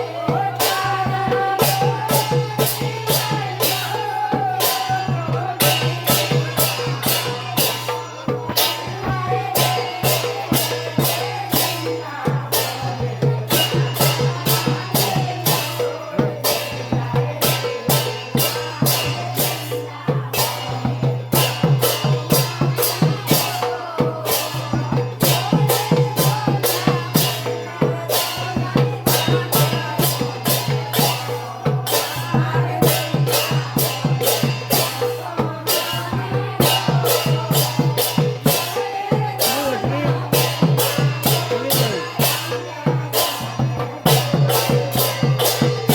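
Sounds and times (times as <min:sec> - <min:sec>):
person singing folk song: 0:00.0 - 0:45.9
steady percussive beat: 0:00.0 - 0:45.9.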